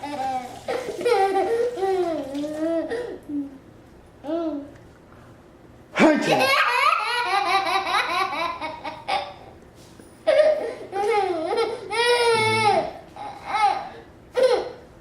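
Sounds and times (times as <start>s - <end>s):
baby laughing: 0.0s - 3.5s, 6.0s - 9.5s, 10.3s - 14.8s
baby crying: 10.3s - 14.8s.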